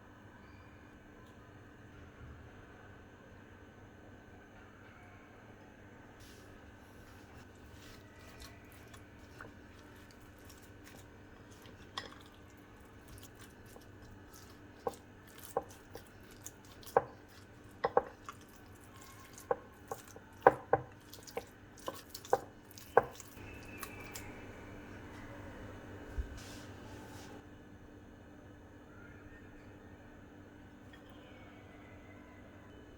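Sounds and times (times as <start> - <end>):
faint steady hum: 0.0 - 32.9
knife knocking on chopping board: 17.8 - 18.2, 19.5 - 20.9.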